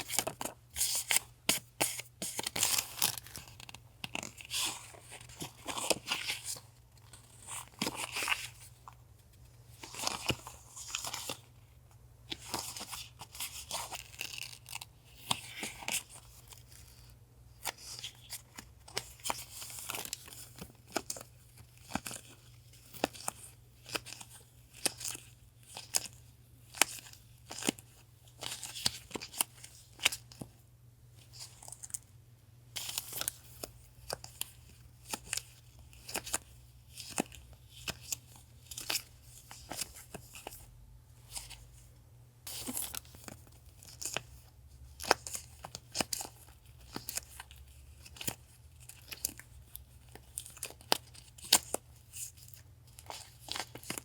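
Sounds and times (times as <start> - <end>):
packaging crinkling and tearing: 42.5 - 54.0.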